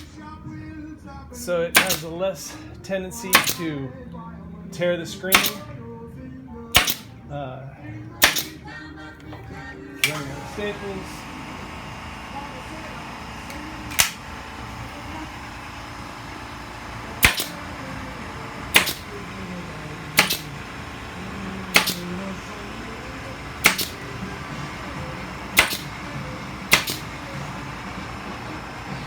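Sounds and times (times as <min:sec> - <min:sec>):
staple gun firing: 0:01.7 - 0:02.2, 0:03.3 - 0:03.8, 0:05.3 - 0:05.8, 0:06.7 - 0:07.2, 0:08.2 - 0:08.7, 0:10.0 - 0:11.0, 0:12.3 - 0:29.0.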